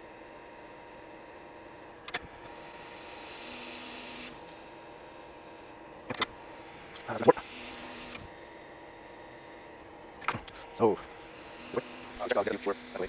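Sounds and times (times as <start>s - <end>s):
hot air station blowing: 6.2s - 13.0s.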